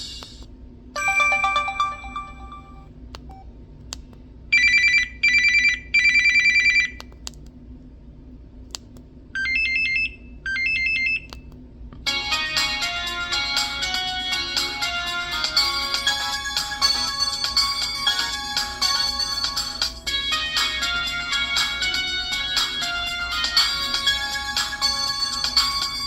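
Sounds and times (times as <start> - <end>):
rising beeps: 1.0 - 2.8
musical ringtone: 1.0 - 2.9, 12.1 - 26.0
phone chime: 1.0 - 2.9.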